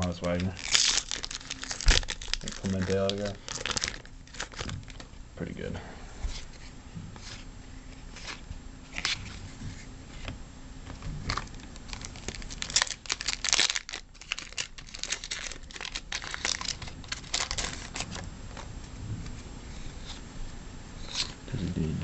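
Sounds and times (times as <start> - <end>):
card pack wrapper crinkling and tearing: 0.0 - 5.1, 8.2 - 9.4, 10.9 - 18.2.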